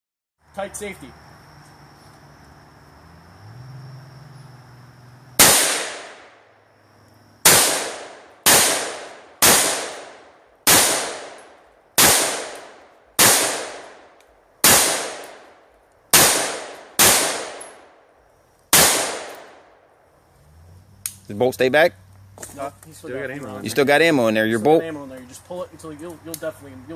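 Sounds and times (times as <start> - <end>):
rifle shots with echo: 5.4 - 6.4, 7.4 - 18.0, 18.7 - 19.7.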